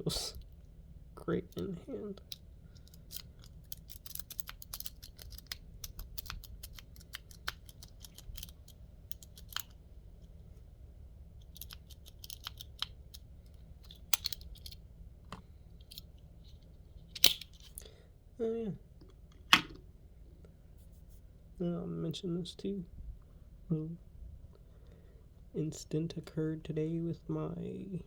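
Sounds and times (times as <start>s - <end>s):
lock pick raking clicks: 2.3s - 9.8s, 11.4s - 13.2s, 13.8s - 14.8s.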